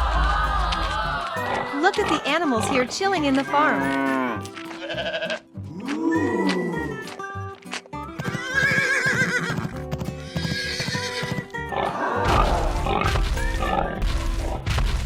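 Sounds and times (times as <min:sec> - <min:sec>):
cartoon background music: 0:00.0 - 0:15.0
horse whinnying: 0:08.2 - 0:12.7.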